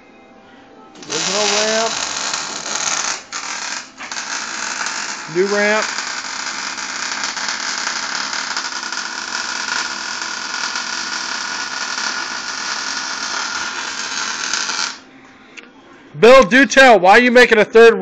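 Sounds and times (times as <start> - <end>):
welding arc hissing: 1.0 - 15.0.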